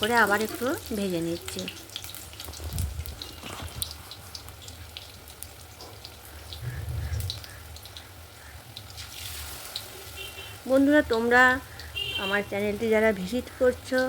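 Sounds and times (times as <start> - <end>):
food sizzling in hot oil: 0.0 - 14.0
dull low bumps: 6.6 - 7.5.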